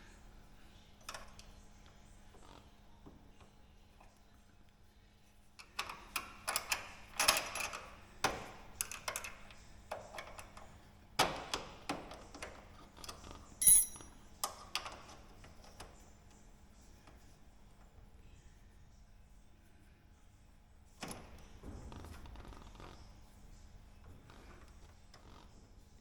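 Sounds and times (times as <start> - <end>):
metal tool clicks and knocks: 13.6 - 14.1
ringing metallic ping: 13.6 - 14.2.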